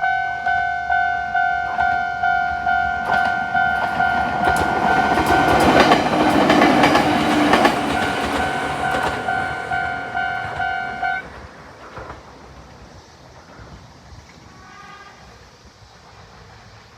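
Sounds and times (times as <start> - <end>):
level crossing alarm pulses: 0.0 - 11.2
train wheels clicking on rail joints: 1.6 - 14.6.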